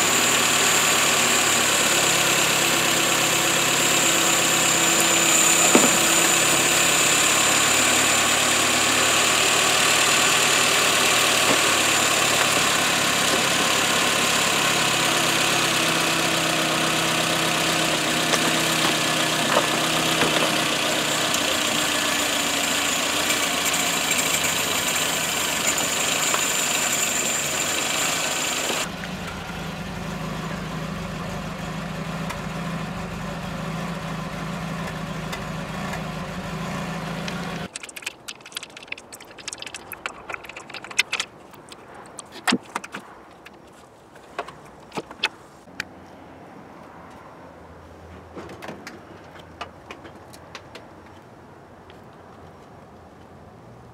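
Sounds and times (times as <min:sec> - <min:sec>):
car engine idling: 0:00.0 - 0:37.7.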